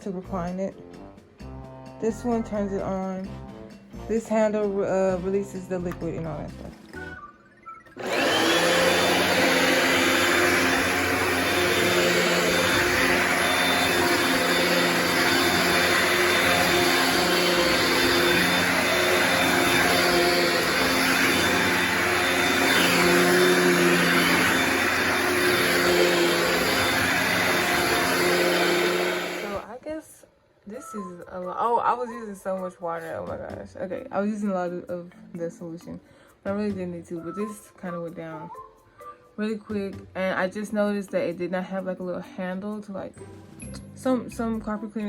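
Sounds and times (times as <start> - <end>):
carpet cleaner motor humming: 8.0 - 29.7.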